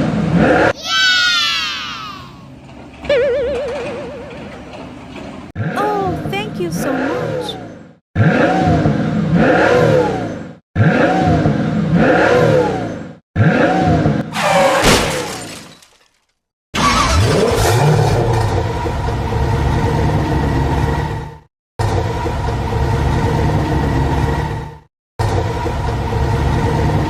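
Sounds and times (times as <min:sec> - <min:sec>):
vehicle engine revving: 0:07.0 - 0:14.6.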